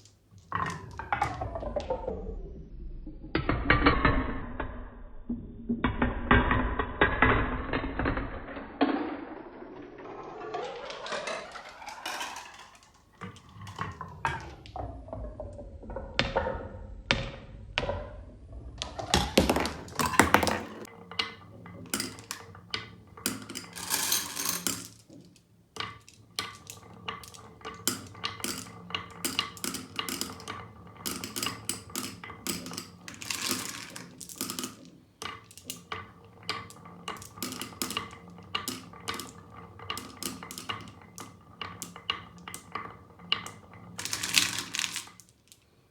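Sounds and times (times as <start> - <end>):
marbles clicking on track: 6.9 - 14.8, 18.8 - 45.7.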